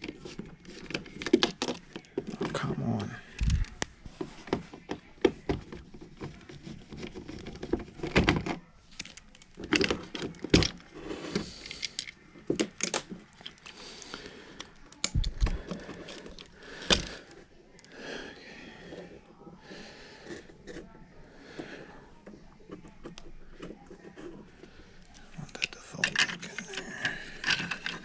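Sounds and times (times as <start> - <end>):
tools clicking and knocking: 25.4 - 28.0.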